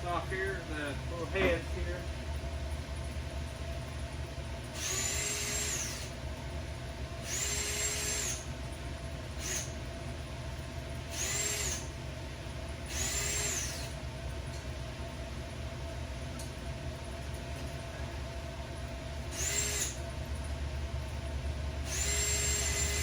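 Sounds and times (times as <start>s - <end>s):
power drill drilling rivets: 4.8s - 6.2s, 7.2s - 8.4s, 9.4s - 9.8s, 11.1s - 11.9s, 12.9s - 14.0s, 19.3s - 20.0s, 21.8s - 23.0s.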